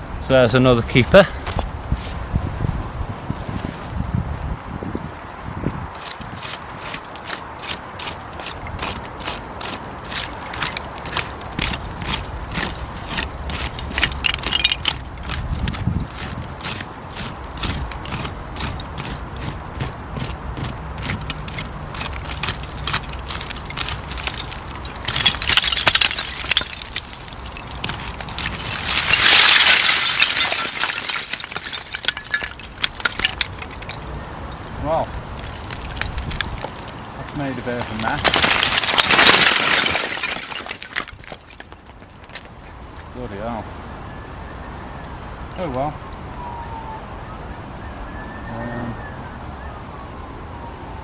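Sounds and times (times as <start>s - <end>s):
tool scraping earth: 0.8s - 2.4s, 3.3s - 4.0s, 5.9s - 42.5s
glass bottles clinking in rubble: 10.0s - 19.5s, 21.0s - 42.8s
glass clinks: 14.0s - 15.0s.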